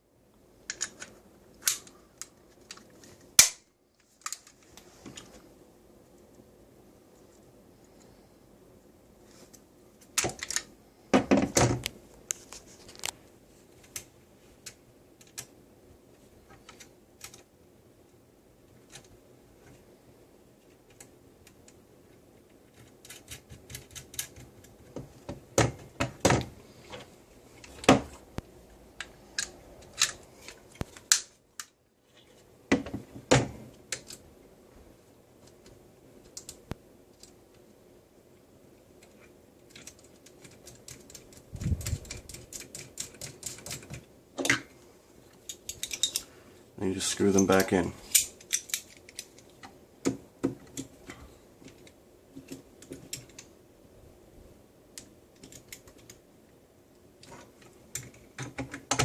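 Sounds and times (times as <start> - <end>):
clicks of small parts handled: 0.7 - 5.3, 9.5 - 10.7, 45.3 - 46.3, 47.4 - 49.7.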